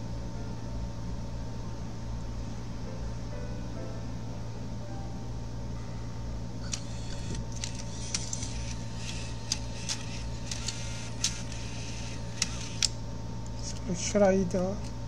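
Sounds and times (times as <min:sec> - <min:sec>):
steady low hum: 0:00.0 - 0:15.0
cd changer mechanism clicking: 0:06.6 - 0:13.0.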